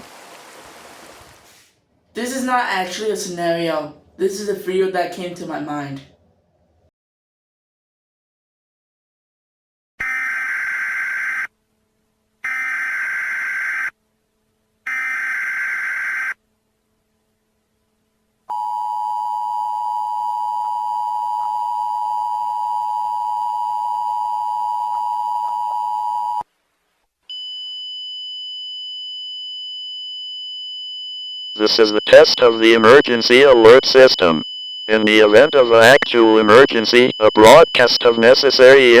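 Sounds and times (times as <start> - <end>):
two-tone attention signal: 31.6 - 39.0.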